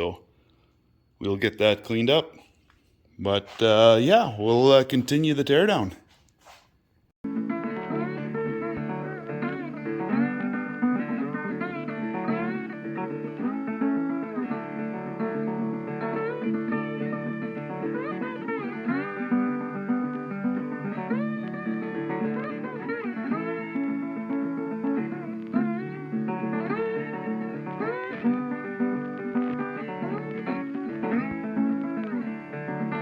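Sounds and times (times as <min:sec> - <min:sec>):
plucked guitar music: 0:07.3 - 0:33.0.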